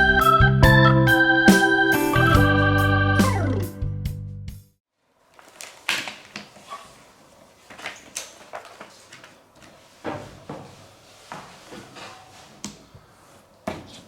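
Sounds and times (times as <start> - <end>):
organ music: 0.0 - 4.5.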